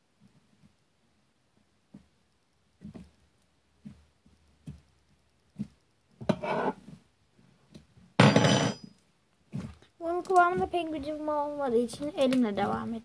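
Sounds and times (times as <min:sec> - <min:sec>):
handling noise: 0:08.2 - 0:09.8.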